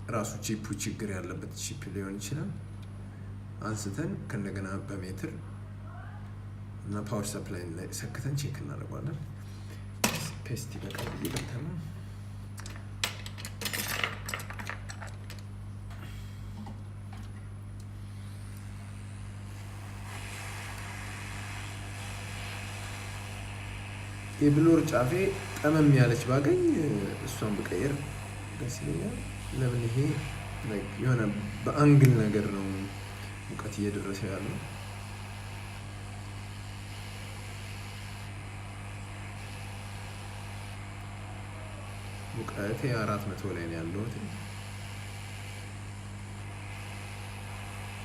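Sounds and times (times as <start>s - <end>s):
low electrical hum: 0.0s - 48.0s
hot air station hissing: 17.9s - 48.0s
hiss of air from nozzle: 19.5s - 27.0s.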